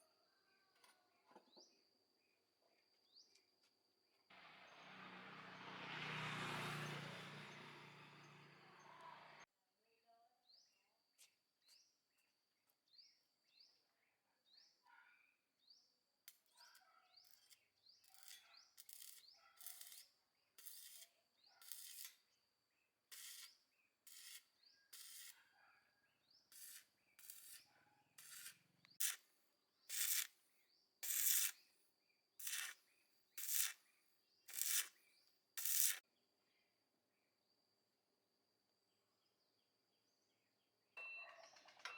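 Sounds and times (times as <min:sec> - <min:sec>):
hand tool scraping a surface: 0:25.0 - 0:25.4, 0:26.5 - 0:29.2, 0:29.9 - 0:30.3, 0:31.0 - 0:31.6, 0:32.4 - 0:32.8, 0:33.4 - 0:33.8, 0:34.5 - 0:34.9, 0:35.6 - 0:36.0.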